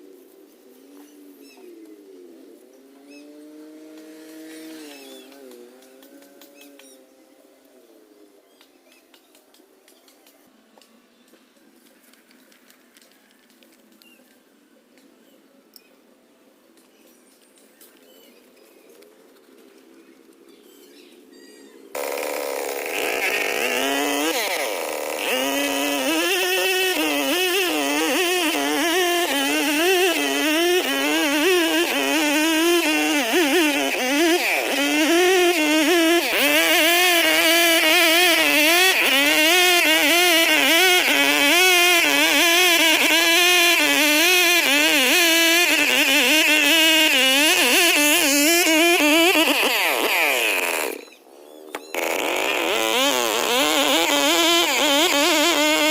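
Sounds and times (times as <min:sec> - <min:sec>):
chainsaw engine running: 0:03.0 - 0:07.0, 0:21.9 - 0:51.2, 0:51.8 - 0:55.9.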